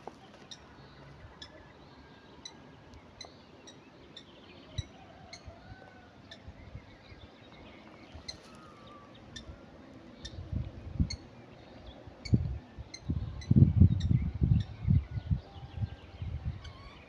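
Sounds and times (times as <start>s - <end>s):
wind gusts on microphone: 9.4s - 17.0s.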